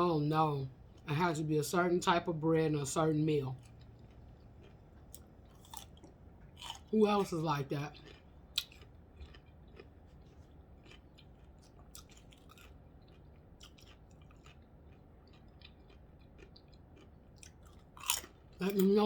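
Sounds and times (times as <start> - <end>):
person chewing food: 3.2 - 19.0.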